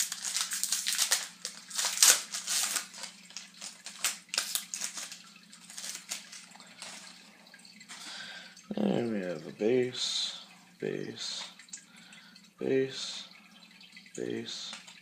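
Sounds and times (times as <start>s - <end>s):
cards being handled: 0.0s - 7.1s
wrapper tearing and crinkling: 0.0s - 7.1s
low steady hum: 0.0s - 15.0s.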